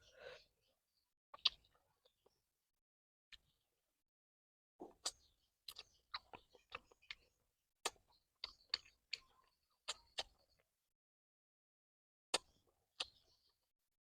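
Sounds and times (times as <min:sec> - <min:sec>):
chewing clicks: 0:04.8 - 0:10.6.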